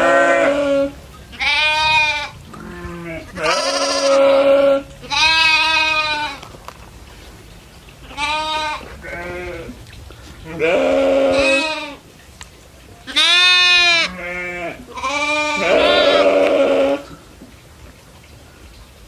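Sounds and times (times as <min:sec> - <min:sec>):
goats bleating: 0:00.0 - 0:06.5, 0:08.1 - 0:09.8, 0:10.4 - 0:12.0, 0:13.1 - 0:17.2.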